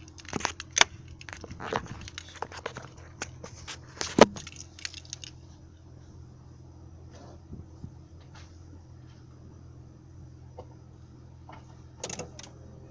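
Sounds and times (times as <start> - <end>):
engine clicks and taps: 0.0 - 5.6, 10.5 - 12.7
car engine running: 0.0 - 12.9.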